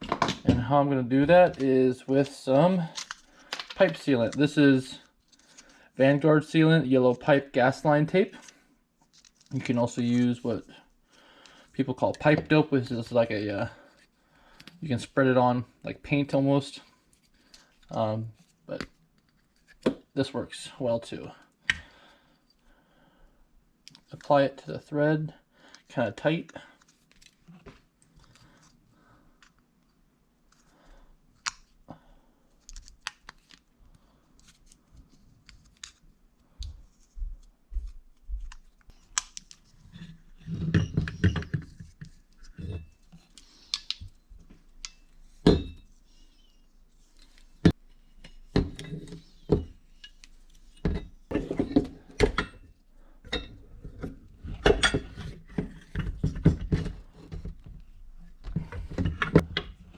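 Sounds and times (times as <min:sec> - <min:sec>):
metal pipe fittings clinking: 0:48.2 - 0:53.6.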